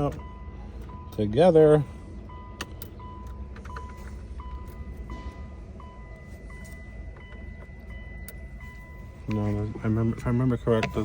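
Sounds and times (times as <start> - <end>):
faint steady high tone: 2.3 - 11.0.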